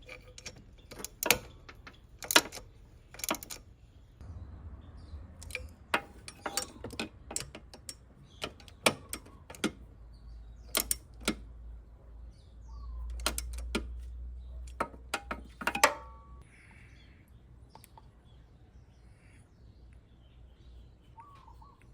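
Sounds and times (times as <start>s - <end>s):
metallic clicks of hand tools: 0.0s - 3.6s, 5.4s - 9.8s, 10.7s - 11.5s, 13.0s - 16.2s
low hum: 4.2s - 6.9s.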